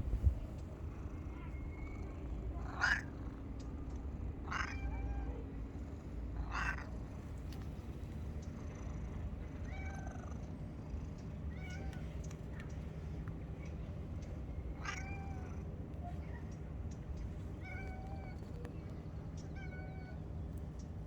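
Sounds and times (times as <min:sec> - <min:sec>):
cat meowing: 0:19.6 - 0:20.2.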